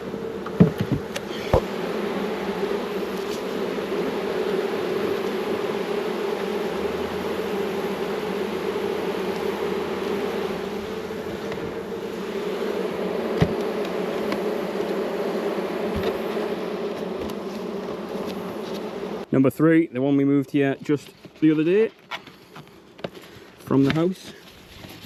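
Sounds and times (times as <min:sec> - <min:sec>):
honey bees buzzing: 0:00.0 - 0:19.3.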